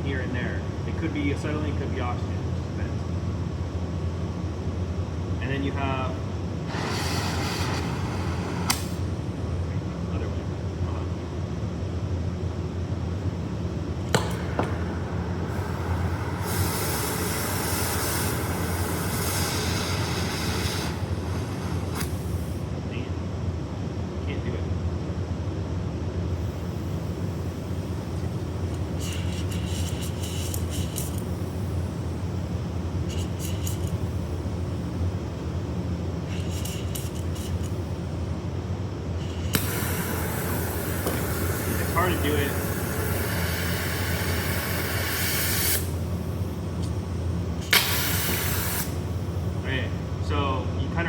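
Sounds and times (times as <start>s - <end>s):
steady low hum: 0.0s - 51.0s
torch gas and flame hissing: 6.5s - 9.7s, 13.4s - 22.8s, 26.3s - 50.2s
torch igniter clicks: 6.7s - 9.2s, 14.0s - 22.7s, 26.5s - 38.1s, 39.2s - 49.7s.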